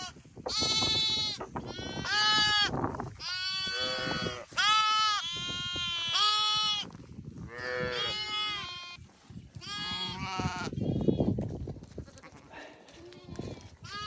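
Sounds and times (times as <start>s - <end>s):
sheep bleating: 0.0s - 6.8s, 7.5s - 9.0s, 9.6s - 10.8s.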